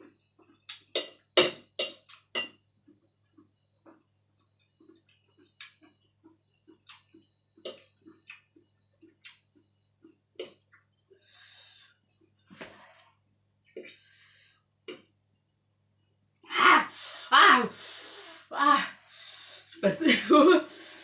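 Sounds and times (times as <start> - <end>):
soft chewing: 2.1 - 11.2.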